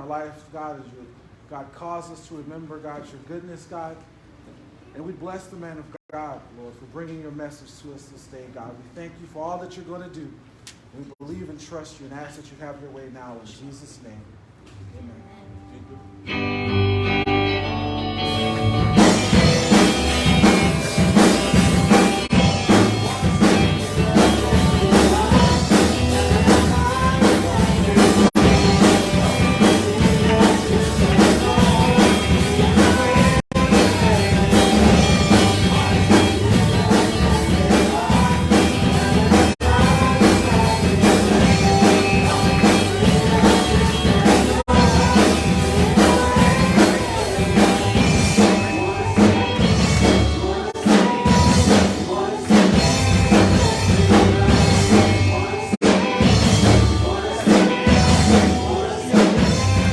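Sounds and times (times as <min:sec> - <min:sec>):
live worship band music: 0:15.2 - 0:59.9.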